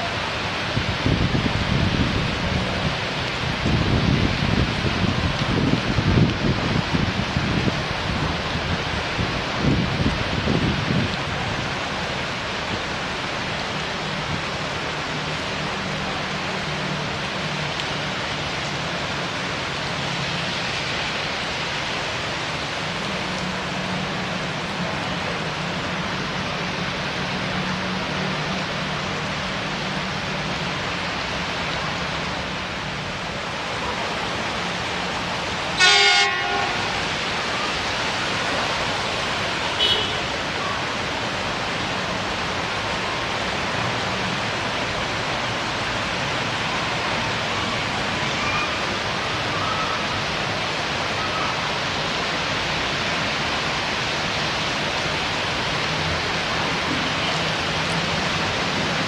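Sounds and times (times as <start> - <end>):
heavy rain pouring: 0.0 - 59.0
train horn toot: 35.8 - 37.1, 39.8 - 40.2.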